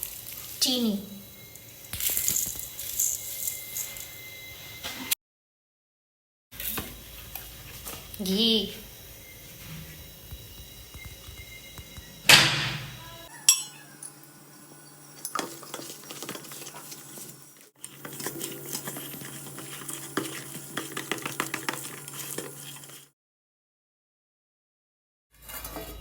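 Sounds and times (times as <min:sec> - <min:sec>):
spoon clinking and scraping a bowl: 0:13.3 - 0:14.3, 0:15.1 - 0:23.1
spoon clatter: 0:13.4 - 0:14.2.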